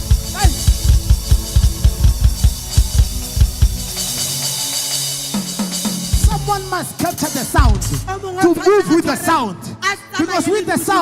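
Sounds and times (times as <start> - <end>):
cymbal wash: 0.0 - 8.4
drum kit beat: 0.0 - 9.0
bass and keyboard notes: 0.0 - 9.4.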